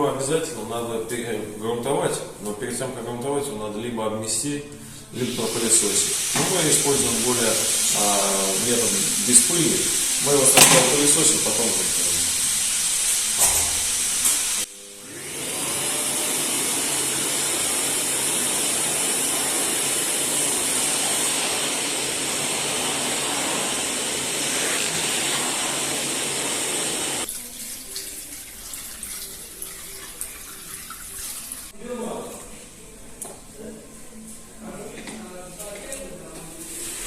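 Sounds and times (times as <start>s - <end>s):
vacuum cleaner running: 5.2s - 27.3s.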